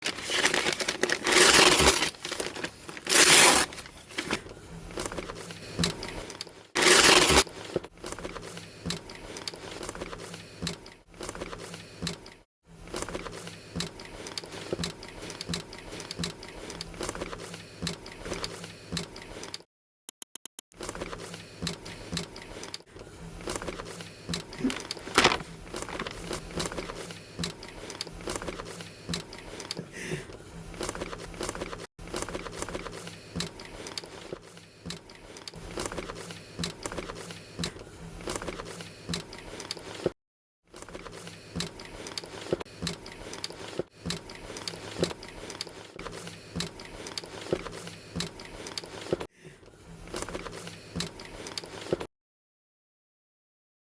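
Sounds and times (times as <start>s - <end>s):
packaging rustling and crinkling: 0.0s - 5.4s, 6.8s - 7.8s, 24.6s - 27.0s.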